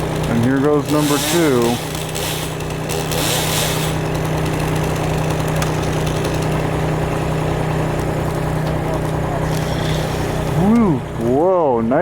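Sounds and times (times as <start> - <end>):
engine running with throb: 0.0 - 12.0.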